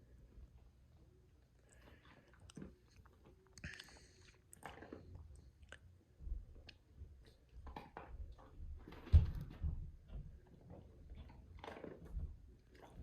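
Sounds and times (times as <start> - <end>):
dog crunching dry kibble: 1.8 - 5.9, 10.6 - 13.0.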